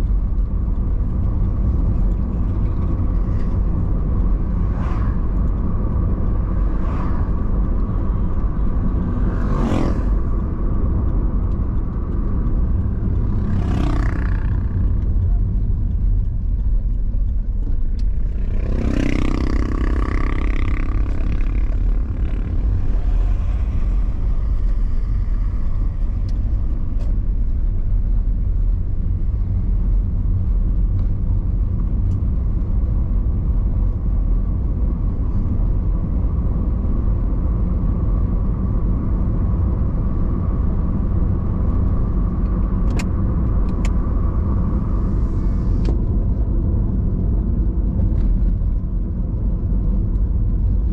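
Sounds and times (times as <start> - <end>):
car engine and tyre rumble: 0.0 - 50.9.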